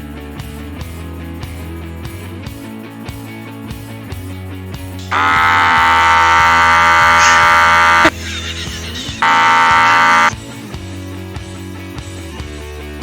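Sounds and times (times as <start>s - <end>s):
air horn blasts: 5.1s - 8.1s, 9.2s - 10.3s.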